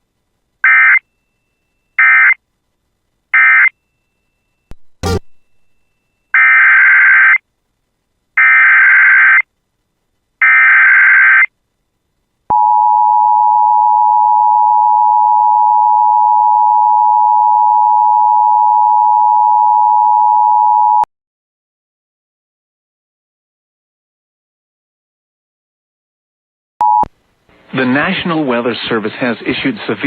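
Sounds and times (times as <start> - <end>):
two-tone alert signal: 4.9 - 5.8
buzzing digital data bursts: 5.0 - 5.8.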